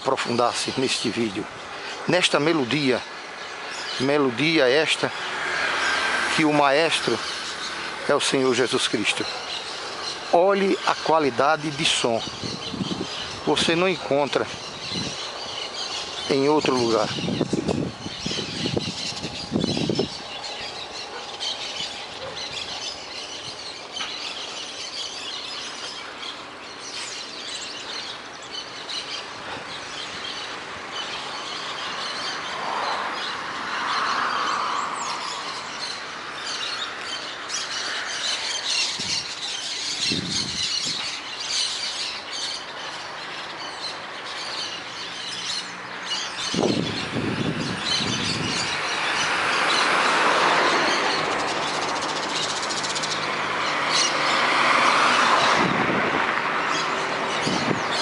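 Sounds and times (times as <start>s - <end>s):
birds chirping: 0.0s - 58.0s
road traffic: 0.0s - 58.0s
vehicle passing: 3.3s - 14.0s, 44.8s - 58.0s.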